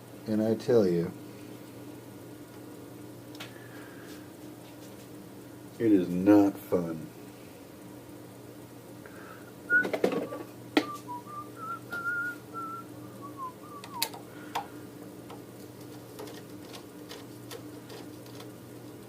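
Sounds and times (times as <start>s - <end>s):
low steady hum: 0.0s - 19.0s
man whistling: 9.7s - 14.2s.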